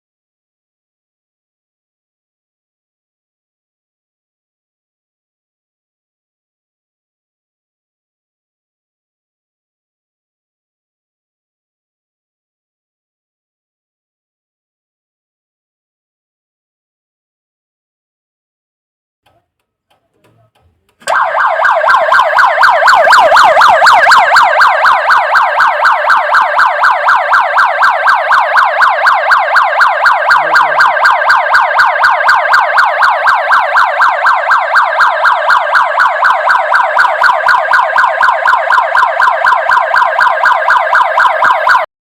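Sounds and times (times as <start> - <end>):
electronic siren wailing: 21.1 - 41.9.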